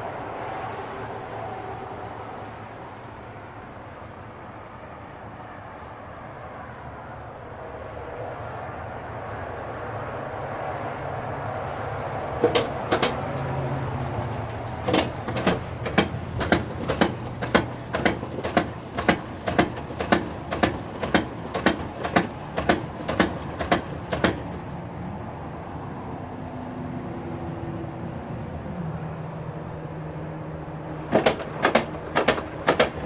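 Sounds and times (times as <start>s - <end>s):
washer humming: 12.4s - 24.7s, 30.9s - 33.0s
washer knocking: 12.4s - 24.7s, 31.0s - 33.0s.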